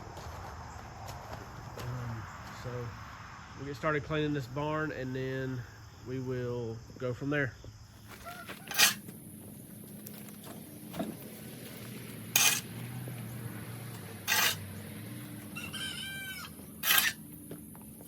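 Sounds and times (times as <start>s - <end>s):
chicken calling: 8.1s - 9.0s, 15.4s - 17.2s
loud rasping sounds: 8.4s - 9.1s, 12.3s - 12.7s, 14.2s - 14.7s, 15.6s - 17.2s.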